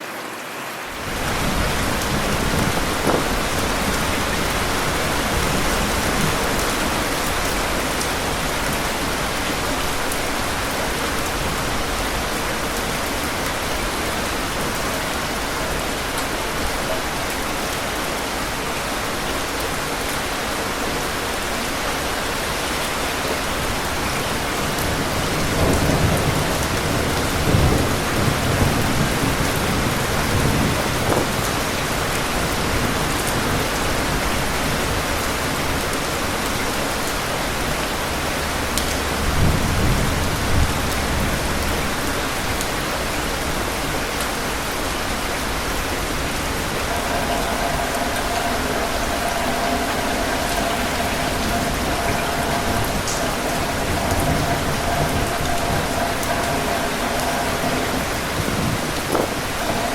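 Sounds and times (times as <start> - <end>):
steady rain hissing: 0.0 - 59.9
low rolling thunder: 1.1 - 17.3, 23.4 - 35.8, 45.4 - 59.9.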